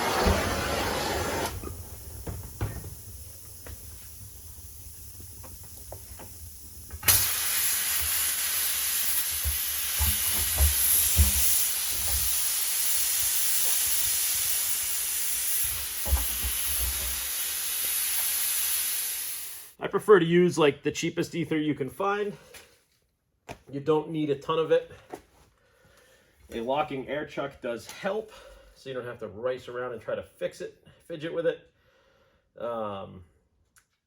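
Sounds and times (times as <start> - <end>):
knocks and thumps: 0.0 - 4.4, 9.3 - 12.4, 15.6 - 17.2
gas hissing under pressure: 0.0 - 19.8.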